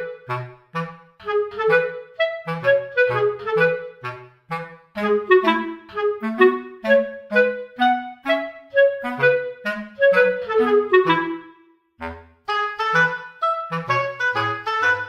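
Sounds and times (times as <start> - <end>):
bouncy clarinet melody: 0.0 - 15.0.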